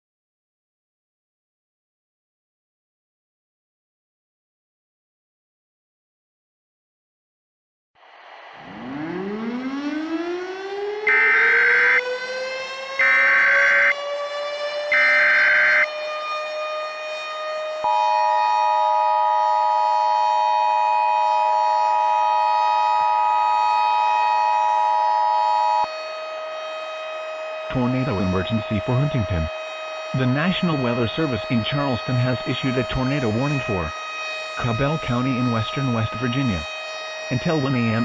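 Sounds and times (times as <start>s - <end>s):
siren wailing: 8.0s - 38.0s
two-tone attention signal: 17.8s - 19.8s.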